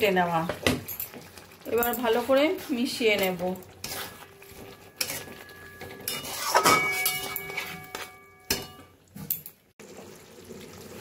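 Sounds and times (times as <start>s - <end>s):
spoon scraping metal pot: 1.0s - 9.4s.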